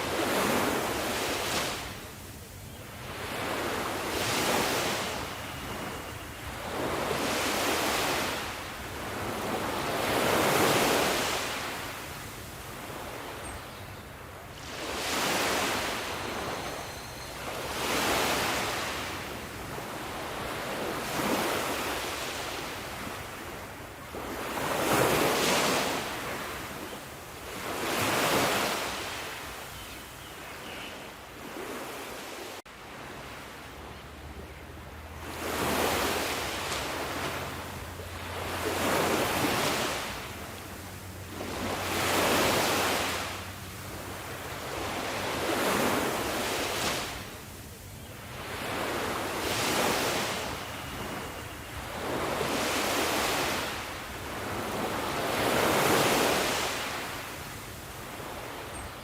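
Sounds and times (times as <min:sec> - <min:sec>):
sea waves breaking on shore: 0:00.0 - 0:59.0.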